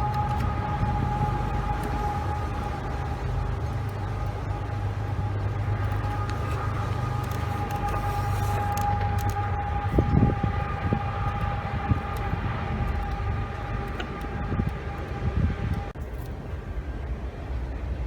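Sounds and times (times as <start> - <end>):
motor hum with whine: 0.0 - 18.0.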